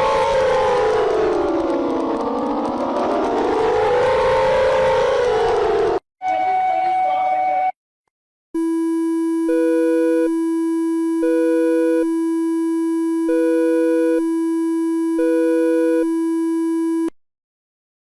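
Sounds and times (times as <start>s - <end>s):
synthesized emergency alarm tone: 8.6s - 17.2s.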